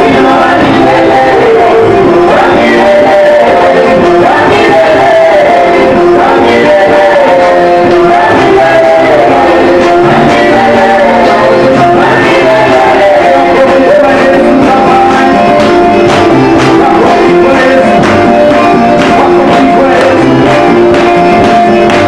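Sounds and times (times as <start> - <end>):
worship music with band: 0.0 - 22.0.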